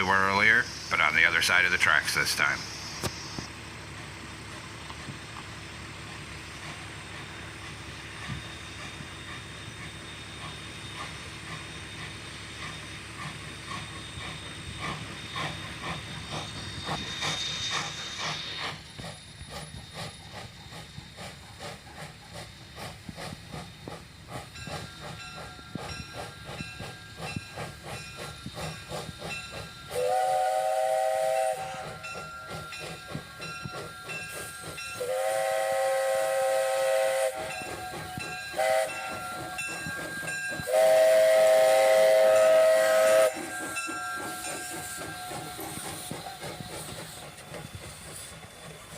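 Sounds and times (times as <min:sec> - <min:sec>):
steam locomotive chuffing: 0:00.0 - 0:48.9
steam whistle blasts: 0:29.9 - 0:47.1.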